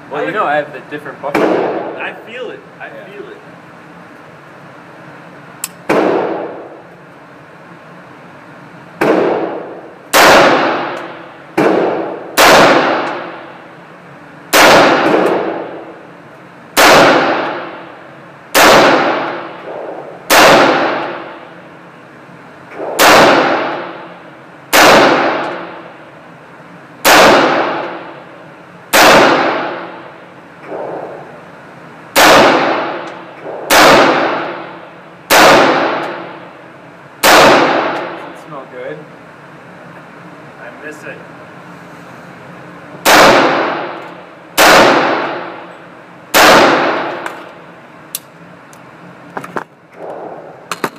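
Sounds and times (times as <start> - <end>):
rifle shots echoing: 1.3 - 2.0, 5.9 - 6.8, 9.0 - 13.6, 14.5 - 16.0, 16.8 - 17.9, 18.5 - 21.6, 22.8 - 26.0, 27.0 - 28.2, 28.9 - 31.4, 32.1 - 36.5, 37.2 - 38.4, 43.0 - 45.7, 46.3 - 47.6, 50.0 - 50.9.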